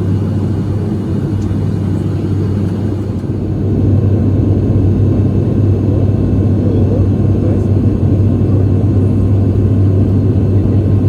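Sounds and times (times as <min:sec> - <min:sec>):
airliner engines droning in cabin: 0:00.0 - 0:11.0.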